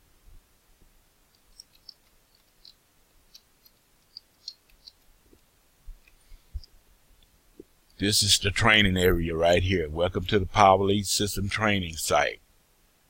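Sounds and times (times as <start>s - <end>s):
computer keys clicking: 1.4s - 5.1s.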